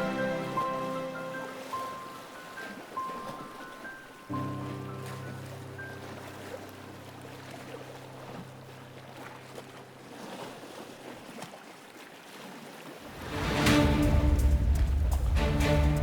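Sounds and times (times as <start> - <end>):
background music: 0.0 - 3.0, 13.1 - 16.0
sea waves washing on a beach: 0.0 - 16.0.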